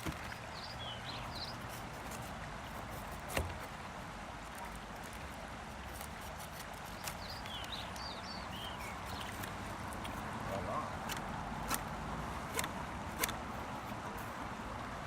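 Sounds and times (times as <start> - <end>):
small birds chirping: 0.0 - 3.4, 5.8 - 11.9
outdoor background noise: 0.0 - 15.0.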